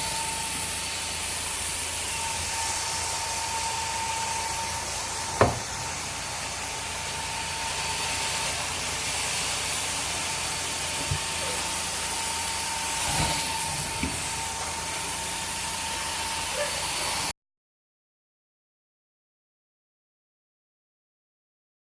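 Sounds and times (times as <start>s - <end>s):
carpet cleaning machine running: 0.0s - 17.3s.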